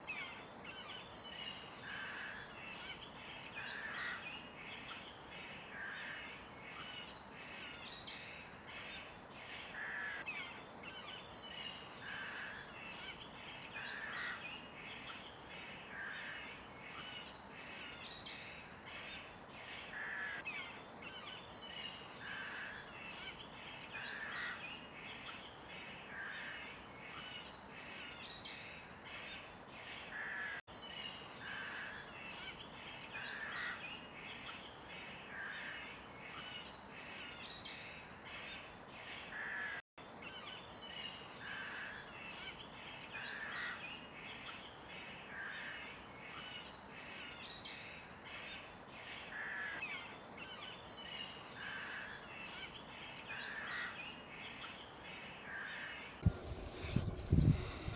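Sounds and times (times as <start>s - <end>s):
songbirds chirping: 0.0s - 39.3s, 40.4s - 57.9s
lower bird call: 56.2s - 57.9s.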